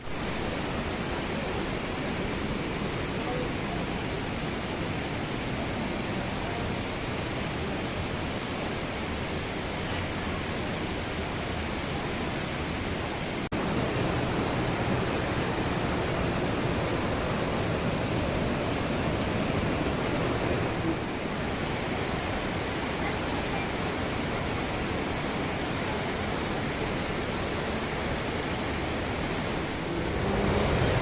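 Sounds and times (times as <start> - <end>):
river water rushing: 0.0 - 31.0.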